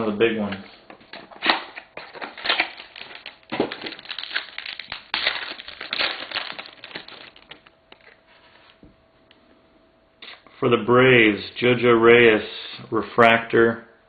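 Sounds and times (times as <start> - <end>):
card pack wrapper tearing and crinkling: 1.4 - 8.1.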